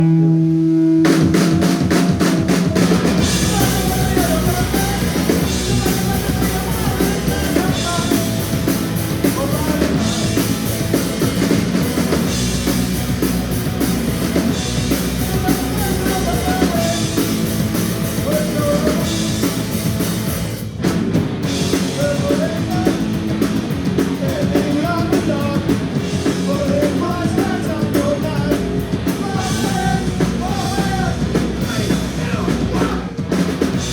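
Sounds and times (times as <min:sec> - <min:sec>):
drum kit beat: 0:01.0 - 0:33.9.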